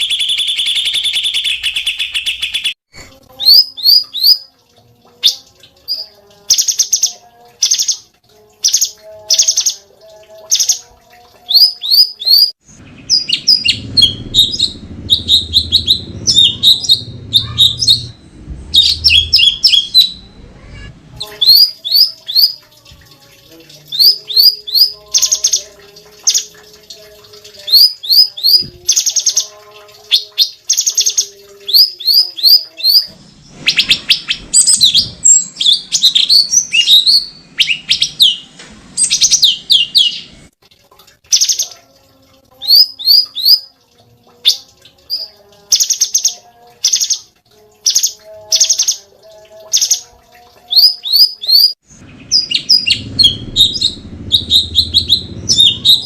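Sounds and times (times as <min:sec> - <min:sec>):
bird whistling song: 0:00.0 - 0:02.8, 0:03.4 - 0:04.4, 0:11.5 - 0:20.4, 0:21.2 - 0:22.6, 0:23.9 - 0:25.6, 0:27.6 - 0:29.4, 0:30.1 - 0:40.3, 0:42.6 - 0:43.7, 0:50.7 - 0:56.0
harsh rasping bird calls: 0:11.6 - 0:22.5.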